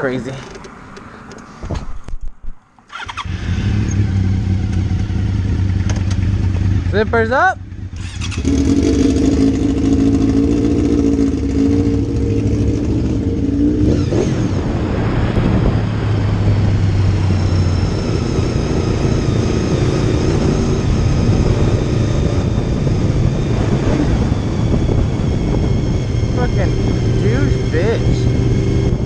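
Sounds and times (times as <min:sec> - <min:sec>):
wind and road rush: 0:00.0 - 0:29.0
motorcycle engine: 0:02.8 - 0:29.0.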